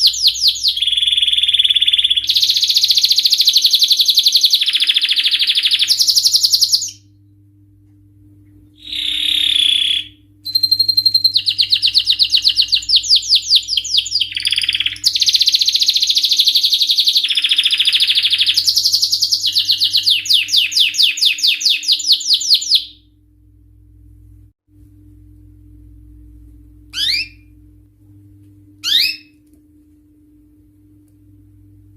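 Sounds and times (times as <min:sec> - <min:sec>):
canary singing trills: 0:00.0 - 0:07.0, 0:08.8 - 0:23.0, 0:26.9 - 0:27.5, 0:28.8 - 0:29.3.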